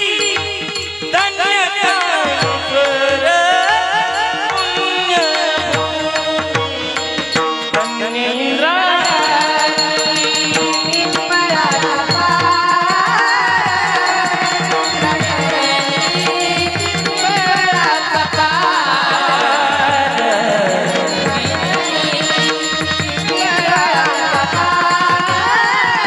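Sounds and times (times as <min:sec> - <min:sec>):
person singing devotional melody: 0:00.0 - 0:26.0.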